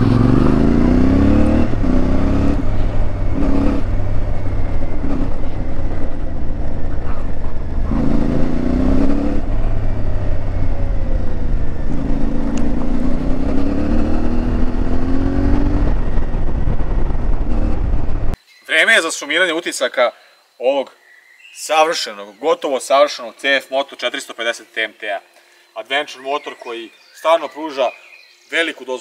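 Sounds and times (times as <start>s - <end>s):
motorcycle engine accelerating: 0.0s - 18.4s.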